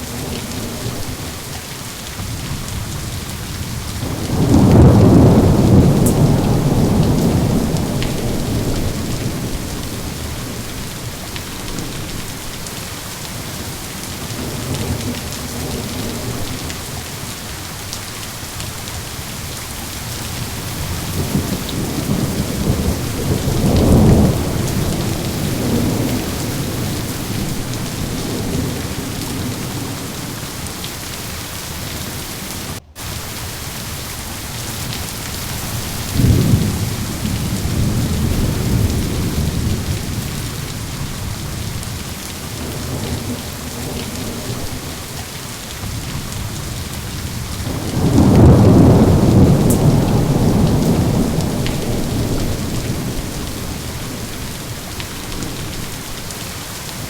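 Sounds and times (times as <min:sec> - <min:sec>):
heavy rain falling: 0:00.0 - 0:57.0
thunder rumbling: 0:02.2 - 0:17.4, 0:20.0 - 0:34.0, 0:34.6 - 0:56.3.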